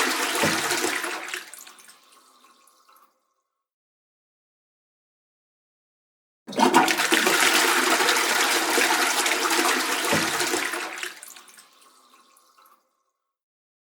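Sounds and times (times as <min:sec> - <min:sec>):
toilet flushing: 0:00.0 - 0:03.0, 0:06.5 - 0:12.8.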